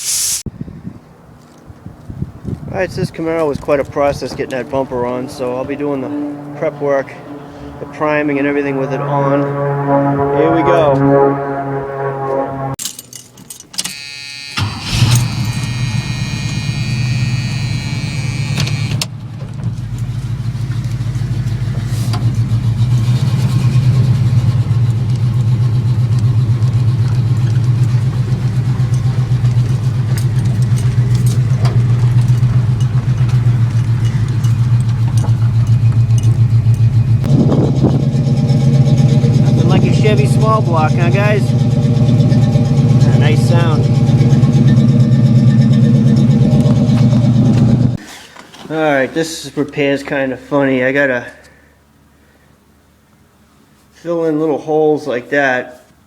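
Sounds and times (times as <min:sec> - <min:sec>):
car engine starting and idling: 0:03.2 - 0:48.0
high whine: 0:06.7 - 0:12.8, 0:13.9 - 0:19.1.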